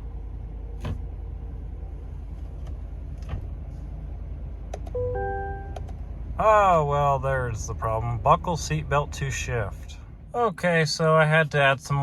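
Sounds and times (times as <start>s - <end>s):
low steady hum: 0.0s - 12.0s
electronic warning chime: 5.0s - 5.8s.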